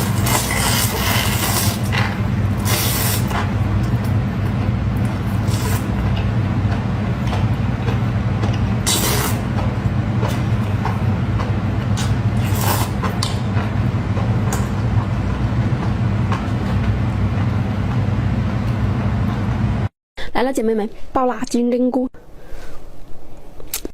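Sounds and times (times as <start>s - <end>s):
slurping and chewing: 0.0s - 3.5s, 5.0s - 16.9s
loud steady low rumble: 0.0s - 19.9s.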